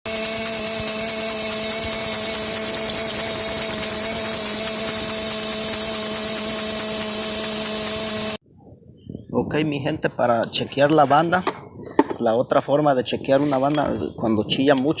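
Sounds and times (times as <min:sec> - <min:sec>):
car engine running: 0:00.0 - 0:08.4
drive belt squealing: 0:00.0 - 0:08.4.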